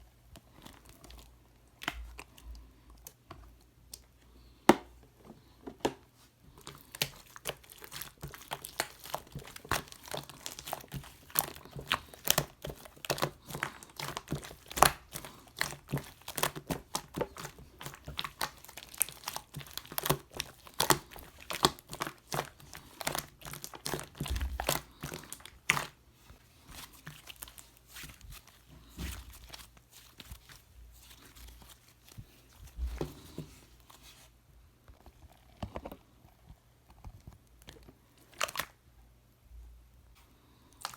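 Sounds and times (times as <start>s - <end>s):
slime crackling and popping: 6.6s - 26.0s.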